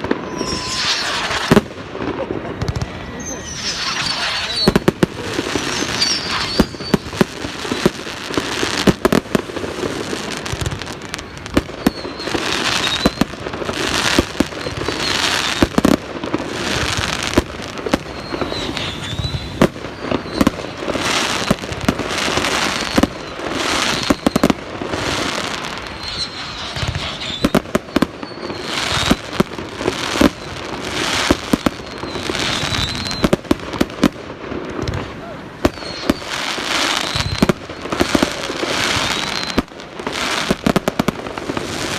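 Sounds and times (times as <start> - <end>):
fireworks bangs: 0.0 - 41.9.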